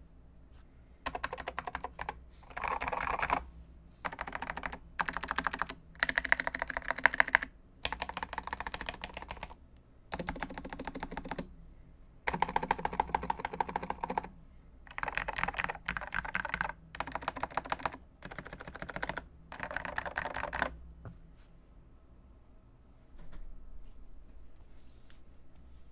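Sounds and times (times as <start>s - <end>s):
computer keyboard typing: 1.0s - 3.4s, 4.0s - 11.5s, 12.3s - 14.3s, 14.9s - 20.8s.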